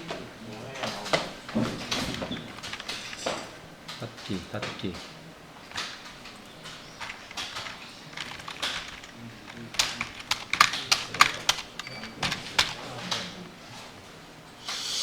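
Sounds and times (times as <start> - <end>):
keyboard key clicks: 5.7 - 13.3.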